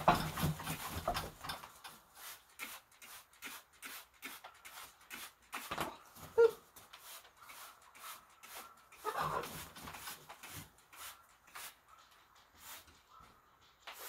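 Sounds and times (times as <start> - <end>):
spray bottle squirting water: 2.2 - 5.8, 9.9 - 11.8.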